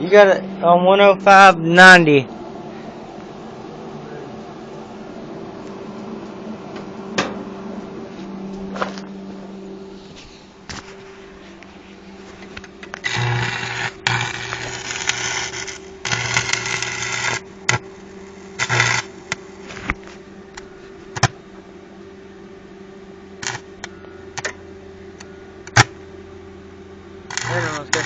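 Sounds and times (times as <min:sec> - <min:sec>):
welder low hum: 0:00.0 - 0:28.0
welding arc burning: 0:12.6 - 0:20.1, 0:23.4 - 0:23.7, 0:27.3 - 0:28.0.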